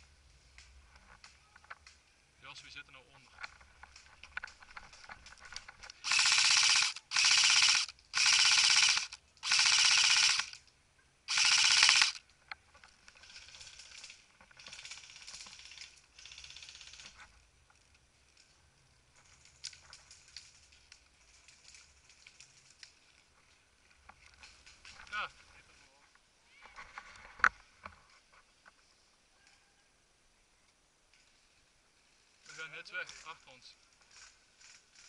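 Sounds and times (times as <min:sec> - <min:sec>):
airsoft rifle automatic fire: 0:06.0 - 0:10.6, 0:11.3 - 0:12.2, 0:13.2 - 0:17.1
distant airsoft automatic fire: 0:06.0 - 0:10.6, 0:11.3 - 0:12.2.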